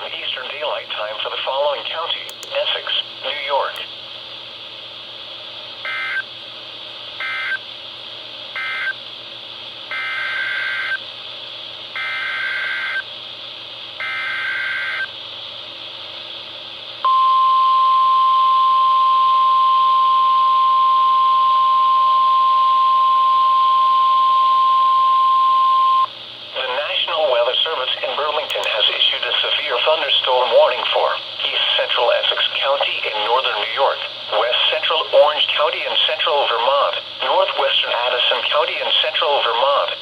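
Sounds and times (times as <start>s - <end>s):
radio hiss: 0.0s - 3.9s, 26.5s - 40.0s
steady weather radio alert tone: 17.1s - 40.0s.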